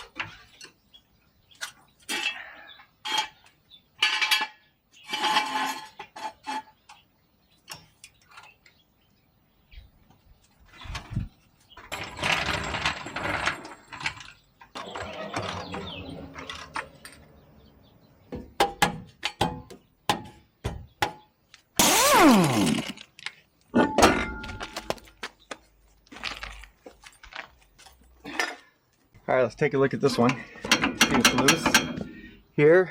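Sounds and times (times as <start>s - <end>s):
metal parts scraping and rattling: 4.0s - 6.8s, 10.7s - 17.4s
sharp clicks and knocks: 30.6s - 32.1s.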